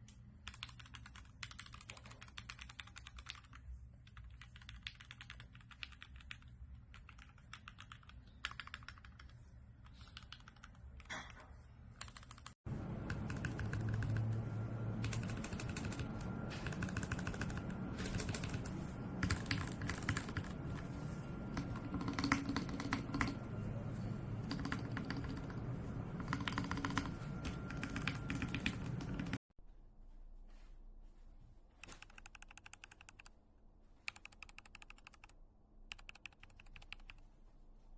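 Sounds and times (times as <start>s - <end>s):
mechanical keyboard typing: 0.4s - 11.3s, 12.0s - 23.5s, 24.4s - 29.4s, 31.8s - 33.3s, 34.1s - 37.2s
low hum: 12.7s - 31.6s.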